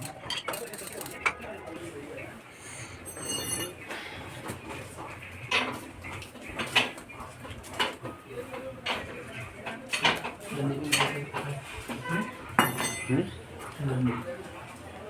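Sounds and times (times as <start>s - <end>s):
metal tools knocking on metal: 0.0s - 1.4s, 3.0s - 4.0s, 12.6s - 13.3s.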